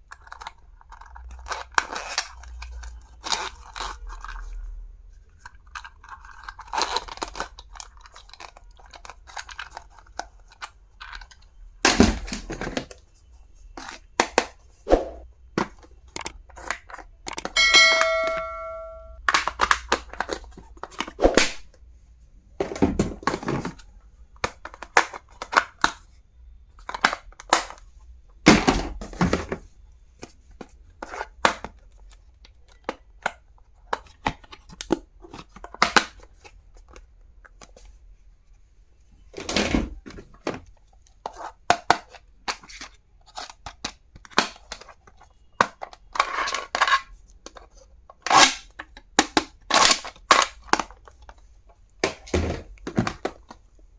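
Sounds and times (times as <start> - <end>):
plastic items clicking and tapping: 0.0 - 4.6, 5.3 - 13.0, 15.6 - 17.6, 19.2 - 21.2, 22.6 - 26.1, 26.7 - 37.9, 39.4 - 53.8
packaging tearing and rustling: 0.1 - 4.6, 5.4 - 11.4.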